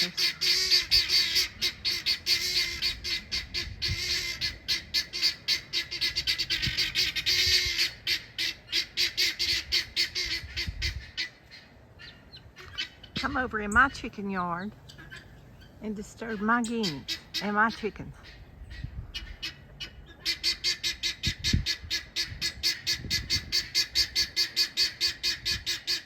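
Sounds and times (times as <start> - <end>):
guinea fowl chattering calls: 0.0 - 26.0.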